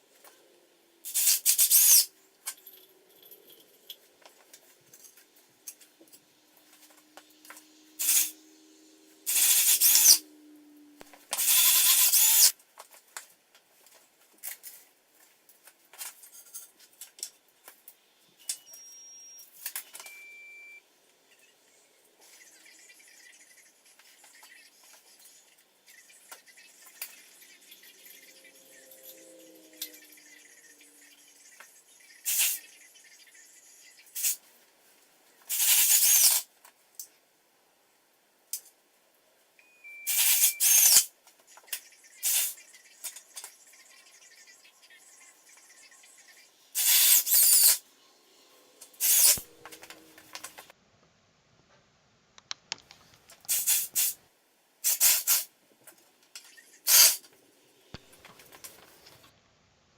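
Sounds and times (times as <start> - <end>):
spray-paint can hissing: 1.1 - 2.1, 8.0 - 8.4, 9.3 - 10.2, 11.4 - 12.5, 32.2 - 32.7, 34.2 - 34.4, 35.5 - 36.4, 40.1 - 41.1, 42.2 - 42.6, 46.8 - 47.8, 49.0 - 49.4, 53.5 - 54.2, 54.8 - 55.5, 56.8 - 57.2.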